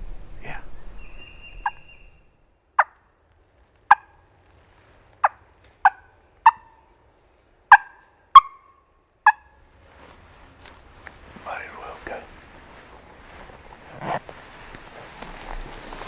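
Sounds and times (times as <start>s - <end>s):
turkey clucks: 1.6s - 1.9s, 2.8s - 3.0s, 3.9s - 4.2s, 5.2s - 6.8s, 7.7s - 9.5s.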